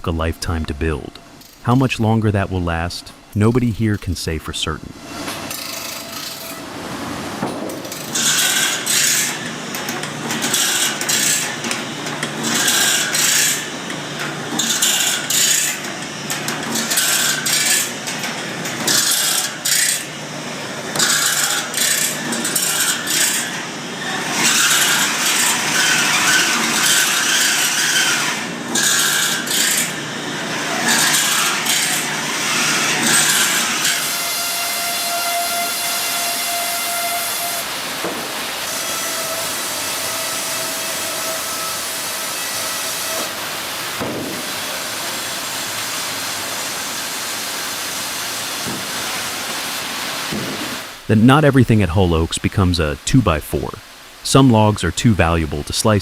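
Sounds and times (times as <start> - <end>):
steady hiss: 43.3 - 56.0.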